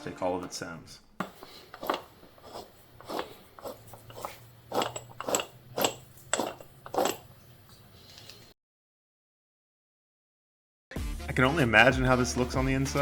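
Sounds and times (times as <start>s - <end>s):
rusty gears grinding: 1.2s - 8.4s.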